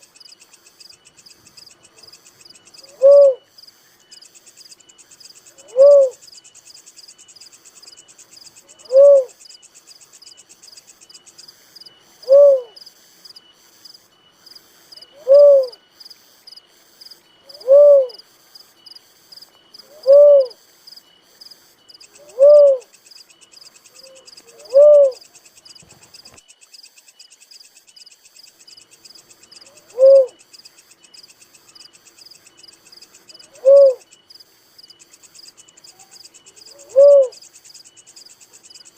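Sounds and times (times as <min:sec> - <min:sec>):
high insect trill: 0:00.0 - 0:38.9
dove cooing: 0:02.8 - 0:03.5, 0:05.5 - 0:06.2, 0:08.6 - 0:09.4, 0:12.2 - 0:12.8, 0:15.0 - 0:15.8, 0:17.4 - 0:18.3, 0:19.8 - 0:20.6, 0:22.2 - 0:22.9, 0:23.9 - 0:25.2, 0:29.6 - 0:30.4, 0:33.3 - 0:34.1, 0:35.9 - 0:37.4.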